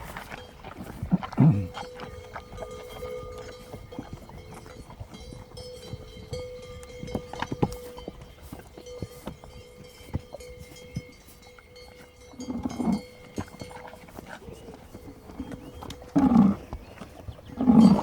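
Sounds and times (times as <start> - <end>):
low rough animal sound: 0.0 - 4.7, 12.0 - 18.0
soft hoof and muzzle knocks: 0.1 - 18.0.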